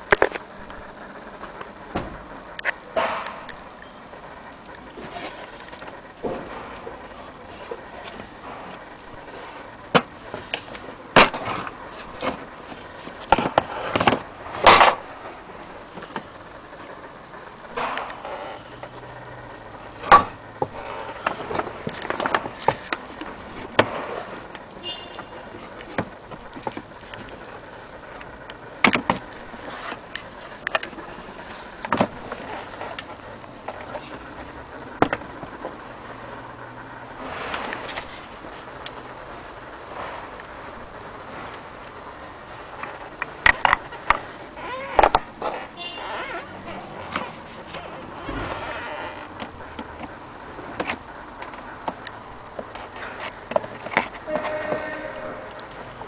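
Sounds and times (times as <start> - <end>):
steady background noise: 0.0 - 56.0
scraping and rubbing: 5.0 - 15.4, 29.3 - 33.0, 42.9 - 49.2.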